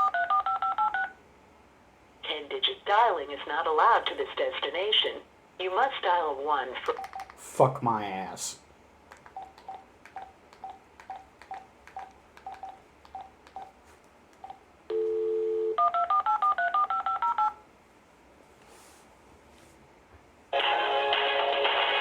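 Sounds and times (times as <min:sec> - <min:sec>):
dial tone: 0:00.0 - 0:01.2, 0:14.9 - 0:17.6
keypad clicks: 0:06.8 - 0:07.4, 0:09.1 - 0:14.6
touch tones: 0:06.8 - 0:07.4, 0:09.3 - 0:13.8, 0:14.4 - 0:17.6
short phone beeps: 0:14.4 - 0:17.6.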